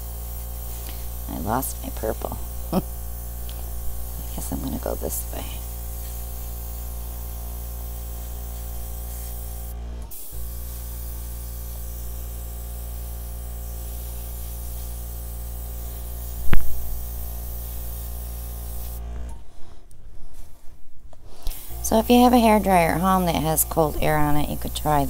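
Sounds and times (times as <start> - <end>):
hair dryer blowing air: 0.0 - 9.7, 21.4 - 25.0.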